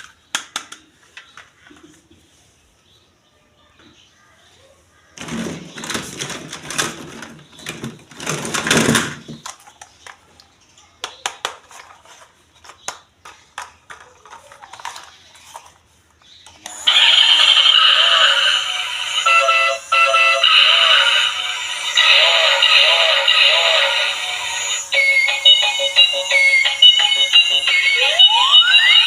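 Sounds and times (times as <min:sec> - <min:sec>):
toys clicking and tapping: 0:05.8 - 0:10.4, 0:11.0 - 0:18.1
electronic music with synthetic voice: 0:16.8 - 0:29.0.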